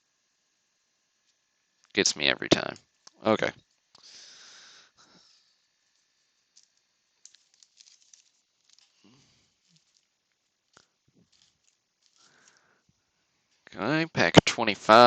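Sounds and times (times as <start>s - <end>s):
cards and wrappers rustling: 5.4s - 12.8s.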